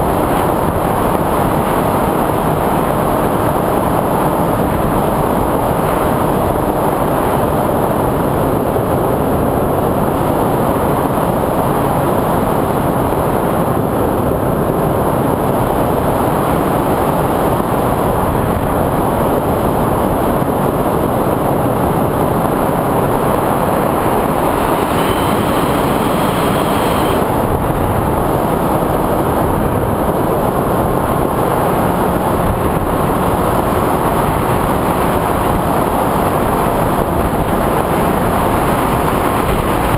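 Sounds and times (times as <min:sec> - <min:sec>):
propellers and wind rushing: 0:00.0 - 0:39.9
high motor whine: 0:16.4 - 0:31.2.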